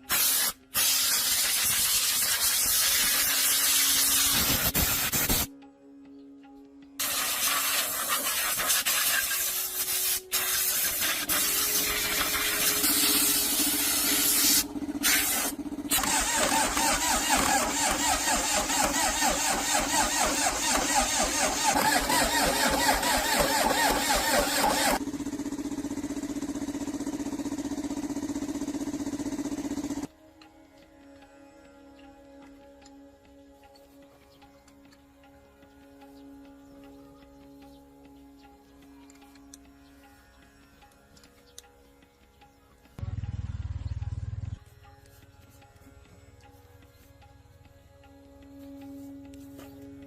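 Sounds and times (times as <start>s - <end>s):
diesel engine running: 10.5s - 30.1s, 43.0s - 50.0s.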